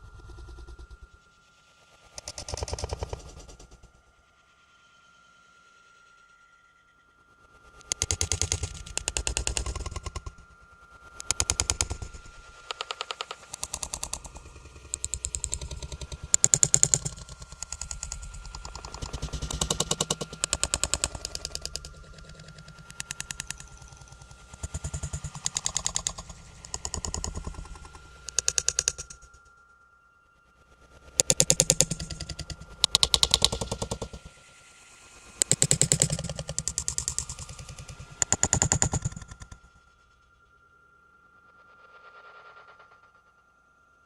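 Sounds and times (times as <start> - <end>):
rapid rattling clicking knocks: 7.9 - 10.3, 15.0 - 21.9, 31.2 - 34.3, 35.4 - 39.5.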